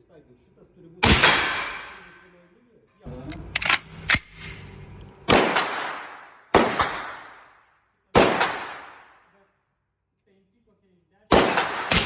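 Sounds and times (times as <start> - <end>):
rifle shots with ringing echo: 1.0 - 2.2, 5.3 - 7.6, 8.2 - 9.2, 11.3 - 12.0.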